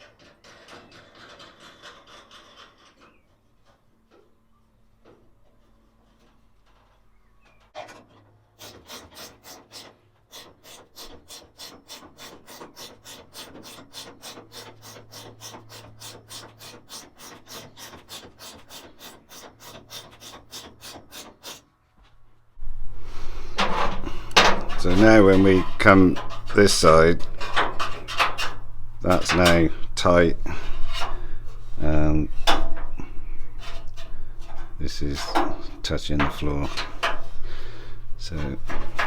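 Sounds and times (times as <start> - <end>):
jack rasping strokes: 8.6 - 21.7, 23.1 - 39.0.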